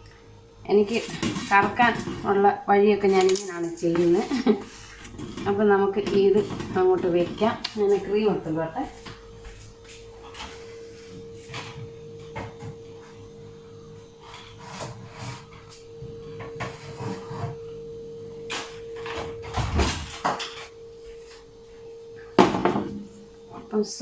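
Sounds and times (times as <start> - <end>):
faint hum: 0.0 - 24.0
clatter and thump: 18.5 - 20.7.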